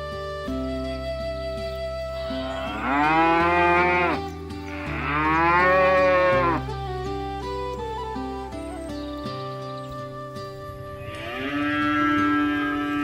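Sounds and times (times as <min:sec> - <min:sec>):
background music with held notes: 0:00.0 - 0:13.0
cow mooing: 0:02.3 - 0:06.7, 0:11.0 - 0:13.0.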